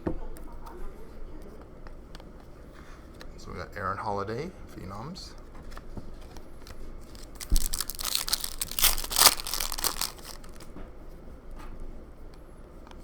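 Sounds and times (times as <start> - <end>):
plastic wrapper crinkling and tearing: 7.1 - 10.7.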